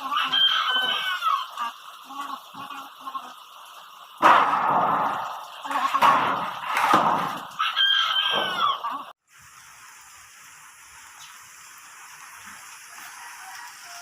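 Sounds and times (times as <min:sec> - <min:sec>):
rooster crowing: 0:00.1 - 0:01.4, 0:07.6 - 0:09.1, 0:12.9 - 0:14.0.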